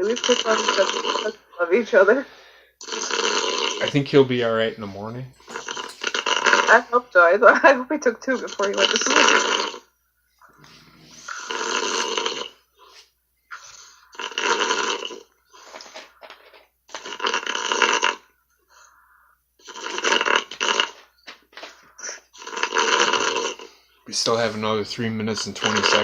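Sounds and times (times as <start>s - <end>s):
man snoring: 0.0s - 1.4s, 2.8s - 6.9s, 8.7s - 9.9s, 10.6s - 16.1s, 16.9s - 21.1s, 22.3s - 26.0s
quiet breaths: 2.2s - 2.8s, 10.2s - 12.1s, 15.4s - 16.6s, 18.4s - 20.0s.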